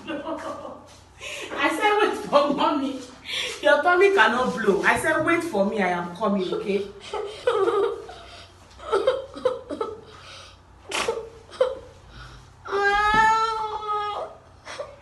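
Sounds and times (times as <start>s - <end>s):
child giggling: 6.4s - 10.2s
child whining cry: 12.7s - 14.8s.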